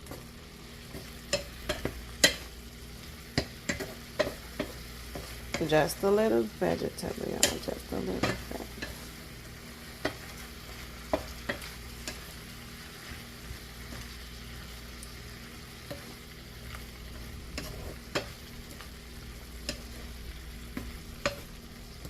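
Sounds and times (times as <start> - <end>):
vegetables sizzling in butter: 0.0 - 22.0.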